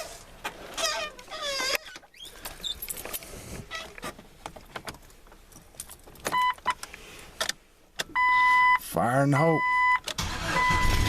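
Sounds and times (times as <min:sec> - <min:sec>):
creaky door squeak: 0:00.7 - 0:02.9
light clicks and rustling: 0:01.6 - 0:08.1.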